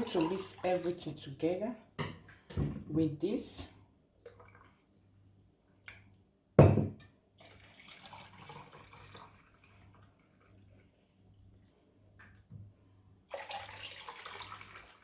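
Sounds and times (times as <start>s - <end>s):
liquid splashing and pouring: 0.0s - 1.1s, 4.2s - 4.9s, 7.4s - 11.8s, 13.3s - 15.0s.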